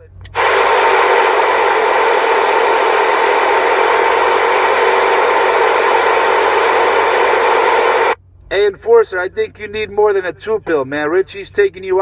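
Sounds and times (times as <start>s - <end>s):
radio static hiss: 0.4s - 8.2s.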